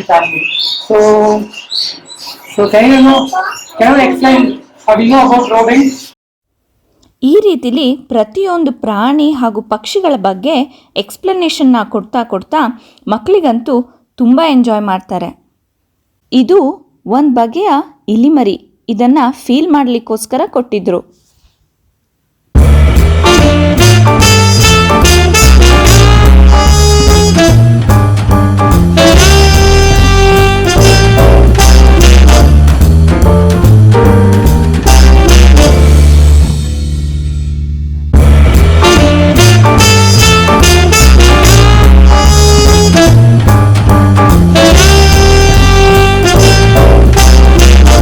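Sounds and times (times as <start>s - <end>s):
upbeat swing tune with horns: 22.6s - 36.6s, 38.2s - 48.0s
walking bass line: 22.6s - 48.0s.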